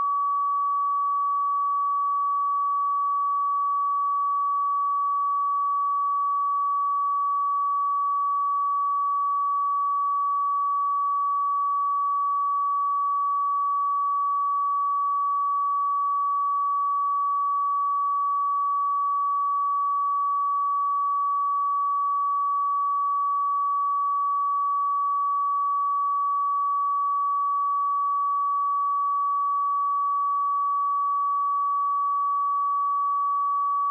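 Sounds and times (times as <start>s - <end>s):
sine-wave test tone: 0.0s - 33.9s.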